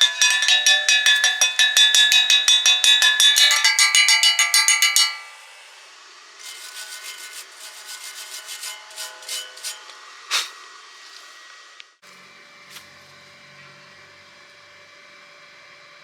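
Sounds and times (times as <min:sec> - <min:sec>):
scraping strokes on metal: 0:00.0 - 0:10.6.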